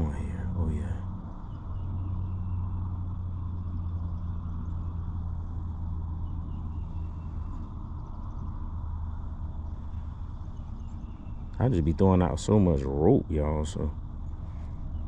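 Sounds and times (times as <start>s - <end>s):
low engine hum: 0.0s - 15.0s.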